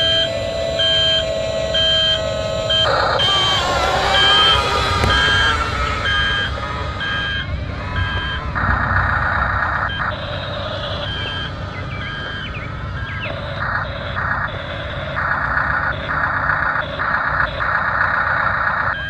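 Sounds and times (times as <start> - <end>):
electronic reversing beeps: 0.0 - 19.0
steady mechanical hum: 0.0 - 19.0.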